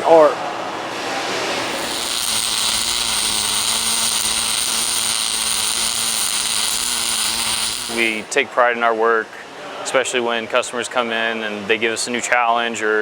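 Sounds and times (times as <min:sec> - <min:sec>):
welding arc hissing and buzzing: 0:01.5 - 0:08.3.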